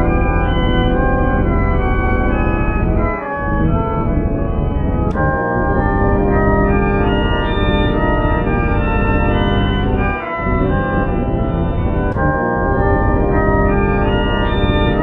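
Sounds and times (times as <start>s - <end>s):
organ-like electronic chords: 0.0s - 15.0s.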